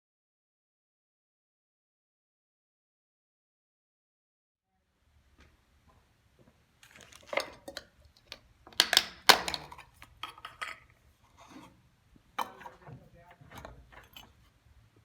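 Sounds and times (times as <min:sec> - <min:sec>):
dishes and pots clattering: 0:08.9 - 0:11.8, 0:12.4 - 0:14.6.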